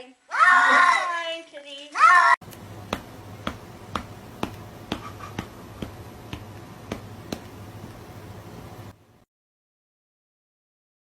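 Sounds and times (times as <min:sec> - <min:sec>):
steady low hum: 0:02.4 - 0:09.3
sharp snapping clicks: 0:02.5 - 0:02.7.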